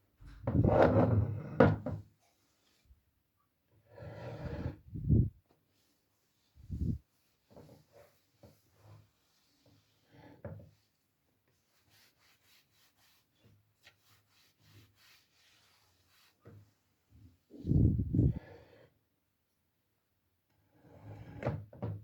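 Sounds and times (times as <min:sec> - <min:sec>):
faint rubbing and tapping: 0:00.2 - 0:02.8, 0:04.7 - 0:18.4.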